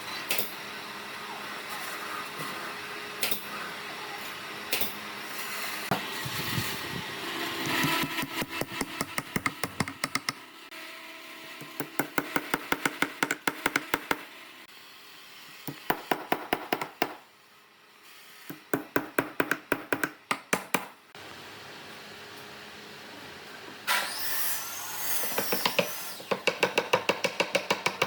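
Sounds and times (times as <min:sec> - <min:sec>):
tool tapping on wood: 0:07.6 - 0:10.4, 0:11.6 - 0:14.3, 0:25.3 - 0:28.0.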